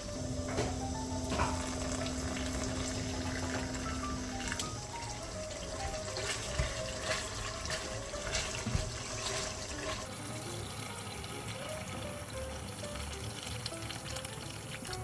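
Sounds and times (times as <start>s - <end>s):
soft background music: 0.0s - 15.0s
water running from a tap: 0.0s - 15.0s
knocks and clicks: 0.4s - 1.9s.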